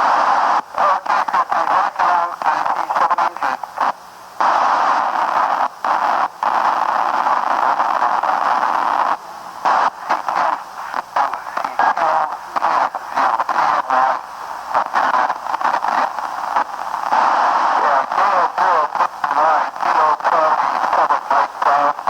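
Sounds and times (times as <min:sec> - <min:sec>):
choppy radio signal fragments: 0:00.0 - 0:22.0
radio static hiss: 0:00.0 - 0:22.0.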